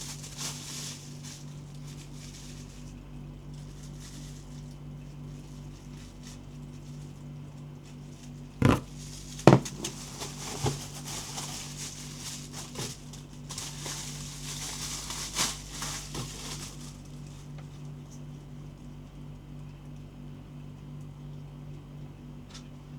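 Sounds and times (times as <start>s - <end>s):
crinkly packaging rustling: 0.0s - 17.9s
steady low hum: 0.0s - 22.9s.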